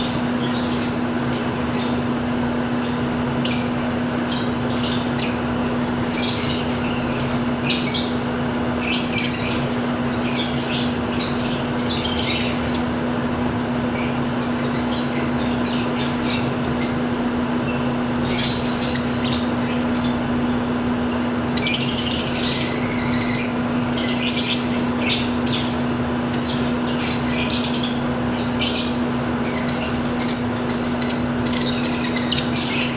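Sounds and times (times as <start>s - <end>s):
lovebirds chirping and squawking: 0.0s - 32.9s.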